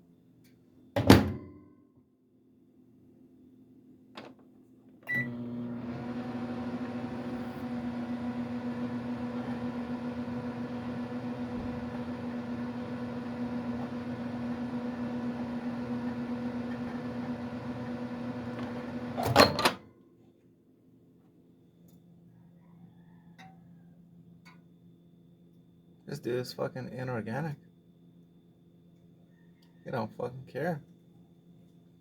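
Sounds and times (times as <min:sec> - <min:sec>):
microwave oven humming: 0:05.0 - 0:19.9
microwave click: 0:05.1 - 0:19.8.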